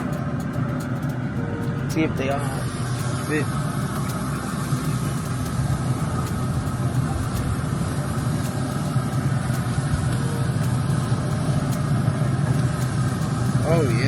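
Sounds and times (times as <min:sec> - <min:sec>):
smoker fan humming: 0:00.0 - 0:14.0.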